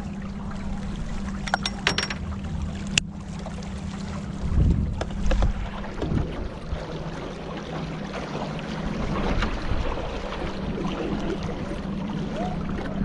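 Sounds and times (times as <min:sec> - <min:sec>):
knocks: 0:01.5 - 0:02.2.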